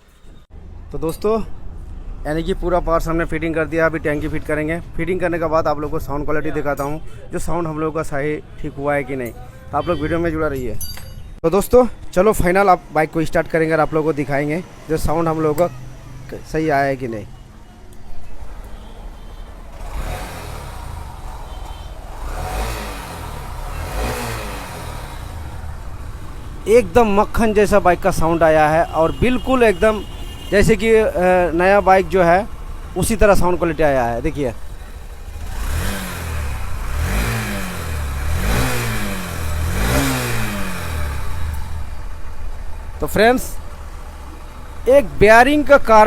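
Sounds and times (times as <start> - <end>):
motorcycle engine revving: 18.4 - 45.8.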